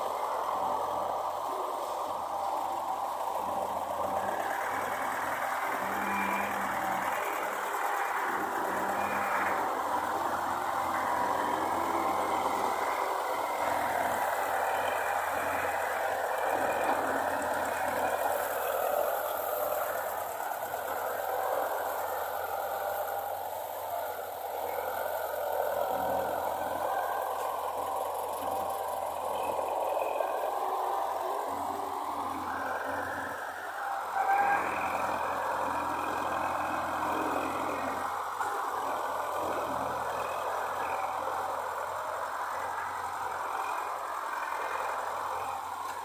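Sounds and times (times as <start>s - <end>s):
heavy machinery engine running: 0.0s - 46.0s.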